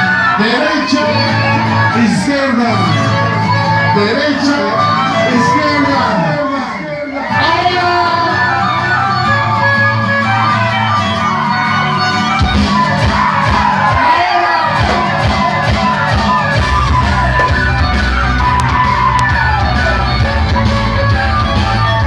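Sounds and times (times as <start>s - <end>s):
people yelling and singing along: 0.0s - 22.0s
loud rock music with heavy bass: 8.4s - 22.0s.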